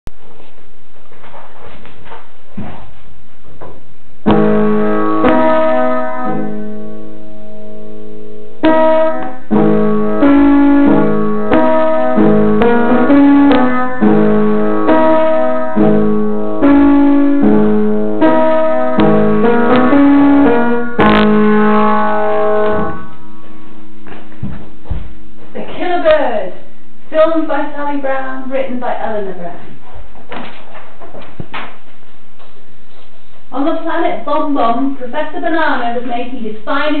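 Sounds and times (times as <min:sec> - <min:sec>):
piano notes and chords: 0:04.2 - 0:24.1.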